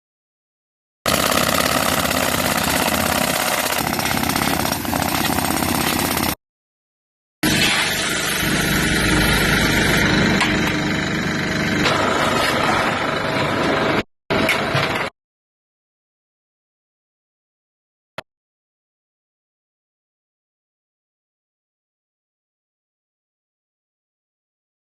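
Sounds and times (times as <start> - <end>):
road repair machine running: 1.1 - 6.4, 7.4 - 15.1.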